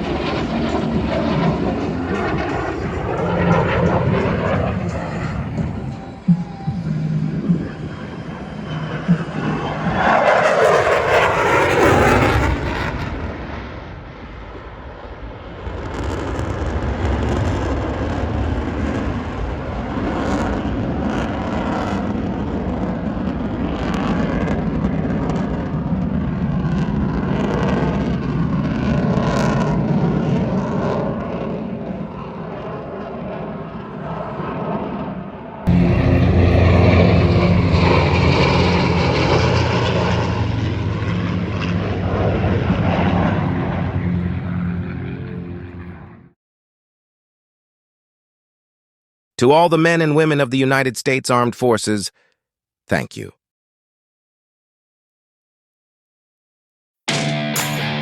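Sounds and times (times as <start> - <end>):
steady engine rumble: 0.0 - 10.1, 35.7 - 46.3
airplane flying past: 0.0 - 46.4.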